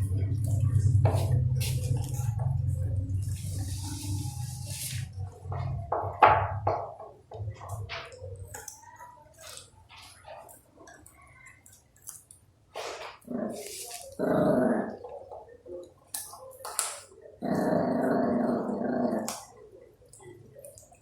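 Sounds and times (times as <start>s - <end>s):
puppies growling: 0.0s - 5.8s, 13.0s - 15.5s, 17.4s - 19.6s.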